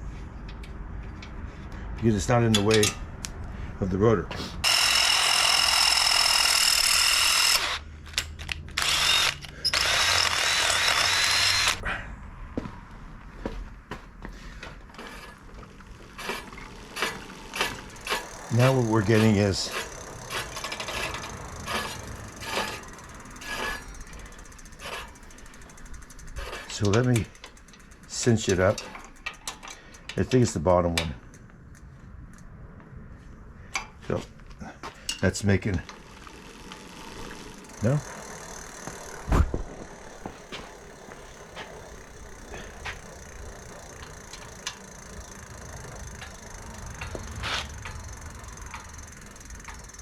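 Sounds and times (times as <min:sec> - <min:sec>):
brake rotor rubbing: 0:04.3 - 0:11.8, 0:13.4 - 0:30.6, 0:34.9 - 0:50.0
bike freewheel ticking: 0:04.6 - 0:11.8, 0:15.0 - 0:31.9, 0:35.0 - 0:50.0.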